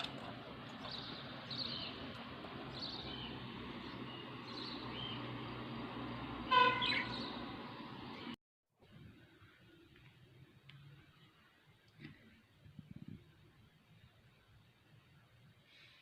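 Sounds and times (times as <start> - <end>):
small birds chirping: 0.4 - 5.7, 6.7 - 8.4.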